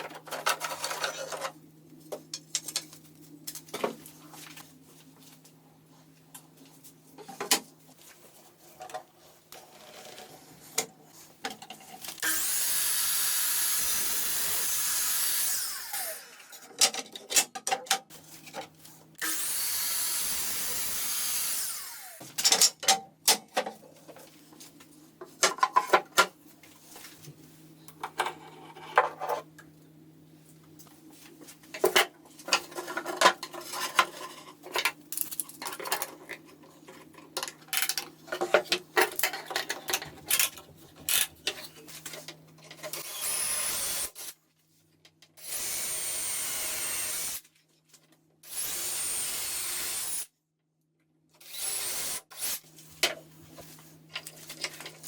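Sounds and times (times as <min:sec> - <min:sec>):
power tool whining: 0:12.2 - 0:16.6, 0:19.2 - 0:22.3.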